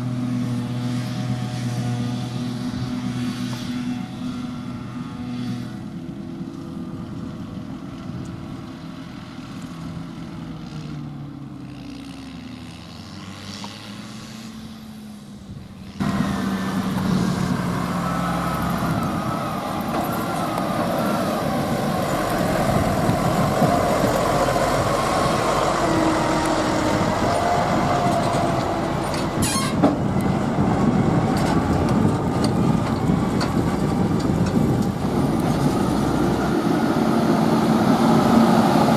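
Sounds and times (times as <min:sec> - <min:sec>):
diesel engine: 0:00.0 - 0:38.9
machinery with wavering whine: 0:16.0 - 0:38.9.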